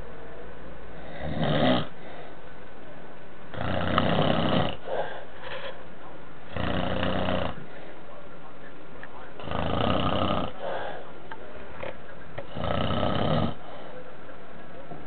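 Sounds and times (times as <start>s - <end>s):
person snoring: 1.0s - 1.9s, 3.5s - 5.1s, 9.4s - 10.8s, 12.5s - 13.6s.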